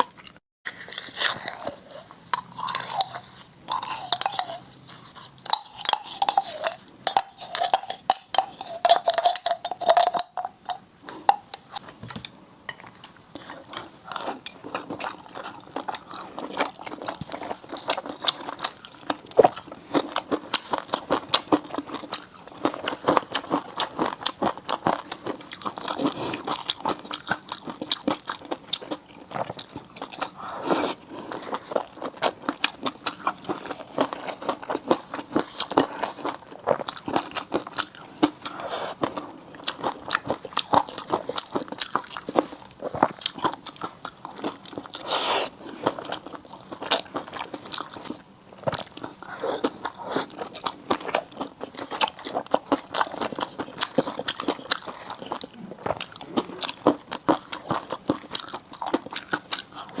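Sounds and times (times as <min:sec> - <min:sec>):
chewing and biting: 0:00.0 - 0:11.9, 0:12.8 - 1:00.0.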